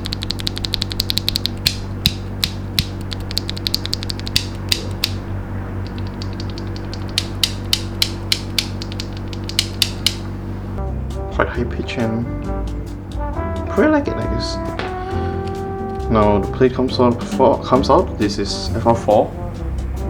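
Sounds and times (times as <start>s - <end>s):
mechanical keyboard clacks: 0.0s - 5.2s, 5.8s - 10.2s
quiet background music: 10.8s - 20.0s.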